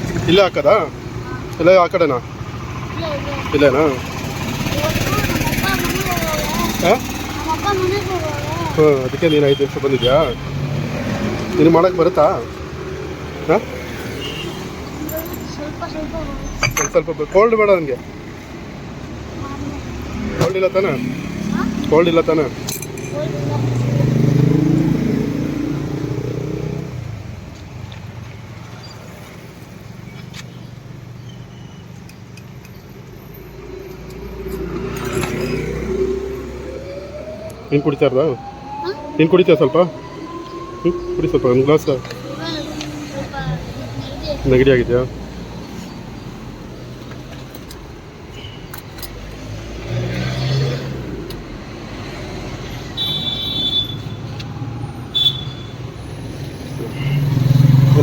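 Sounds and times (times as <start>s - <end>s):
vehicle engine rumble: 0.0s - 58.0s
high-pitched tone: 35.4s - 44.4s.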